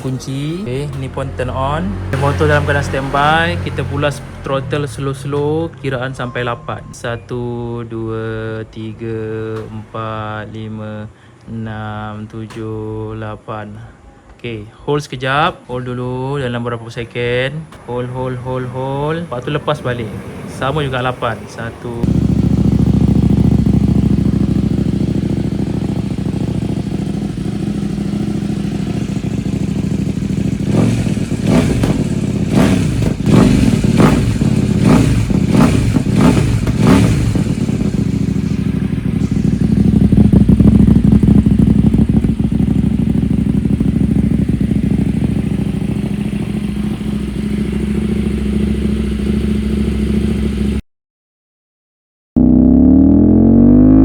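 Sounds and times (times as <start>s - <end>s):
engine throttle revs: 0.0s - 5.8s, 18.2s - 50.8s, 52.4s - 54.0s
motorcycle engine idling: 0.0s - 7.2s, 22.0s - 50.8s.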